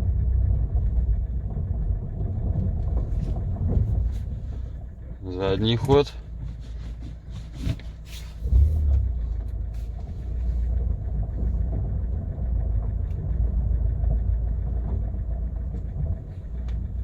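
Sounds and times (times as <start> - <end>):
car engine low rumble: 0.0 - 17.0.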